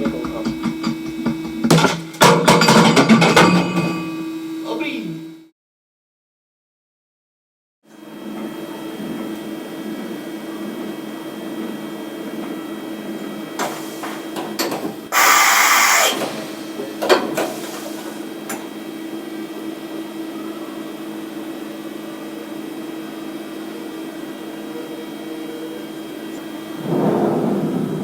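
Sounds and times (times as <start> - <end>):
sharp knocks and clicks: 0.0 - 3.5
milling machine humming: 0.0 - 5.4, 8.0 - 28.0
loud hiss: 15.1 - 18.3.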